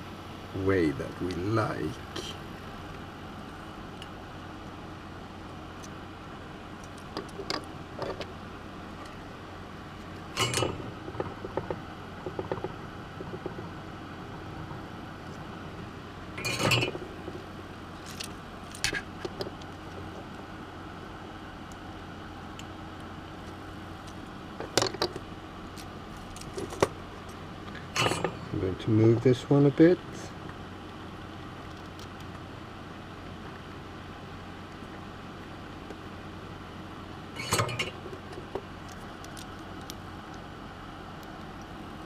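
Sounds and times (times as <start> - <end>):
steady background hum: 0.0 - 42.0
small parts clicking and clinking: 18.0 - 20.0, 37.4 - 40.4.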